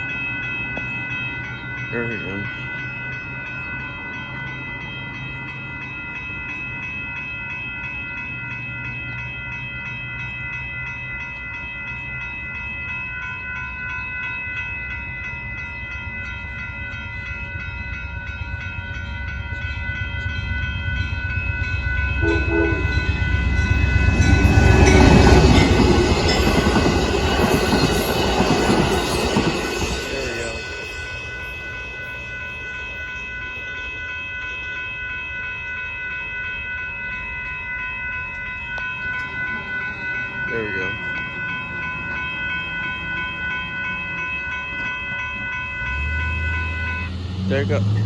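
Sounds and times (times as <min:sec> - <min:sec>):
railroad crossing bell ringing: 0:00.0 - 0:48.0
locomotive rumble passing: 0:14.6 - 0:33.4, 0:39.0 - 0:48.0
train horn: 0:22.2 - 0:23.3.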